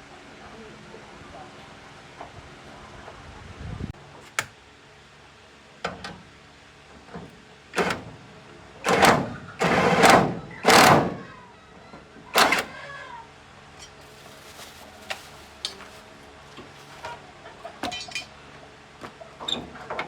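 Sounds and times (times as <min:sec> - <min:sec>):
scraping sounds: 0:13.8 - 0:17.2.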